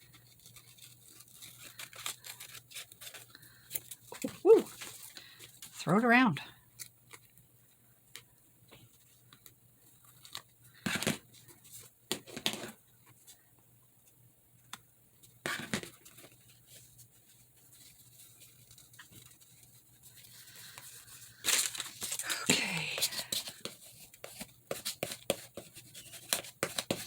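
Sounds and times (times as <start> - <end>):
paper rustling: 0.0 - 5.8, 15.5 - 27.0.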